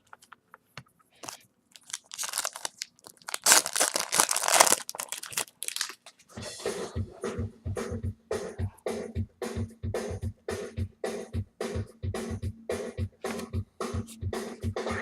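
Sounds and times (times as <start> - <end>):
card wrapper tearing and crinkling: 1.2 - 6.1
music with low beat: 6.4 - 15.0.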